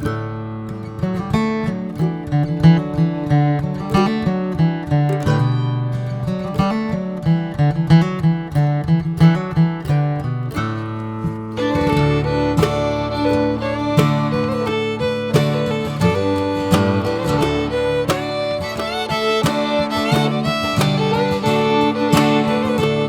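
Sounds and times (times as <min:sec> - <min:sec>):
acoustic guitar: 0:00.0 - 0:23.0
fiddle playing: 0:11.5 - 0:23.0.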